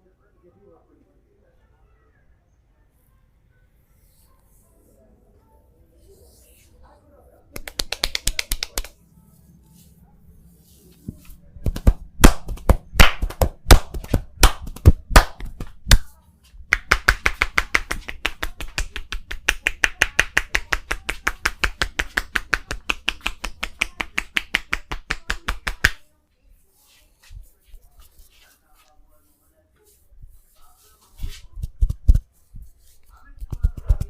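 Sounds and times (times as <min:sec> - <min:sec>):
hands slapping the body: 0:07.6 - 0:09.0, 0:11.2 - 0:26.0, 0:31.2 - 0:32.2, 0:33.4 - 0:34.0
fast chopping massage strikes: 0:11.6 - 0:16.0.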